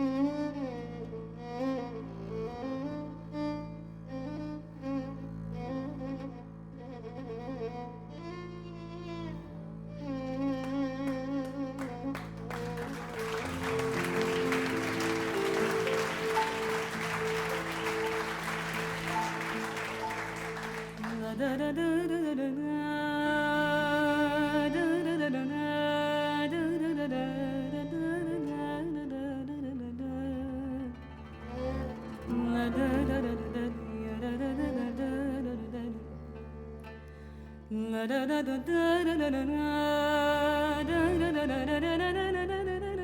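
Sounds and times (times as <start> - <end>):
audience applause: 11.8 - 21.5
orchestral music: 12.4 - 21.4.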